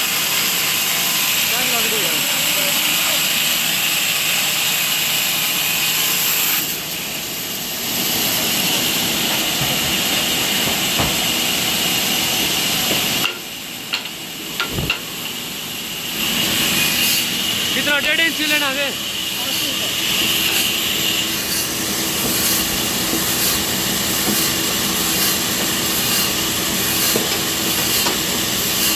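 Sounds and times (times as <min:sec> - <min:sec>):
sawmill saw cutting log: 0:00.0 - 0:28.9
sharp knocks: 0:09.3 - 0:11.3, 0:14.0 - 0:15.2.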